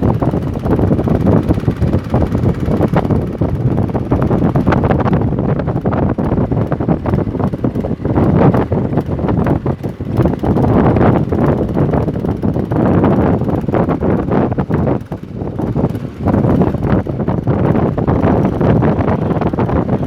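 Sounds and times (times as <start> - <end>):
boat engine rumbling: 0.0 - 20.0
wind buffeting microphone: 0.0 - 20.0.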